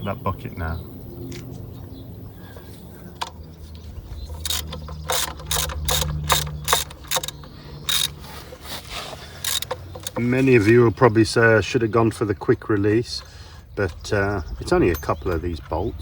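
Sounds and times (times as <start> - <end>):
ratchet wrench clicking: 4.3 - 8.2, 9.4 - 10.3.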